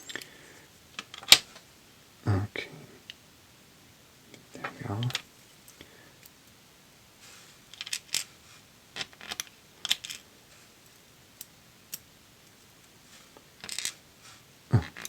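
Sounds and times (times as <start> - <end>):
small metal lock parts clicking: 9.0 - 10.2.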